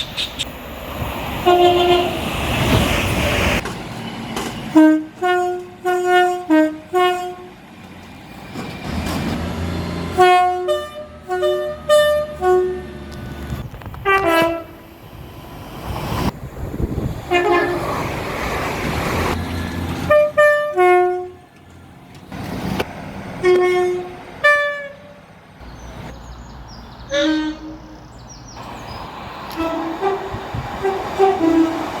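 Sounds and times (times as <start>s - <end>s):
train rumbling: 0.0s - 32.0s
train horn blasts: 1.4s - 2.3s, 4.7s - 7.6s, 10.1s - 13.2s, 14.0s - 14.9s, 17.3s - 18.0s, 20.0s - 21.5s, 23.4s - 25.2s, 27.1s - 28.0s, 29.5s - 32.0s.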